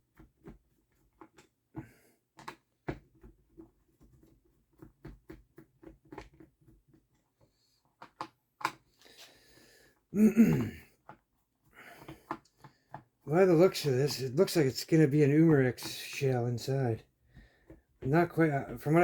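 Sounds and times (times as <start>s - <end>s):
plastic and metal parts clicking: 2.3s - 9.0s, 11.0s - 13.2s.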